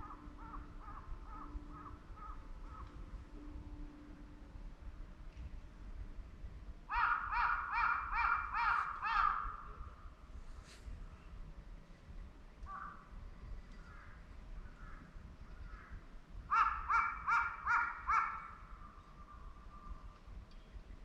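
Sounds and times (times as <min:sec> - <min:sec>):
crow cawing: 0:00.0 - 0:02.9, 0:06.9 - 0:09.7, 0:14.8 - 0:18.7.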